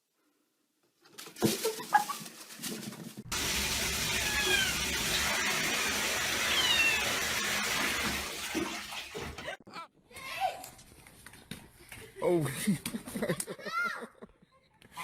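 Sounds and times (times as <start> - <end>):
cat meowing: 4.1 - 4.9, 6.4 - 7.1.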